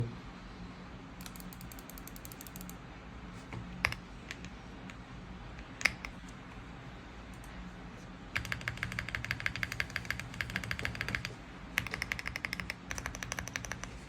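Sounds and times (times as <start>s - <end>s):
mechanical keyboard typing: 1.2s - 2.8s, 8.4s - 14.0s.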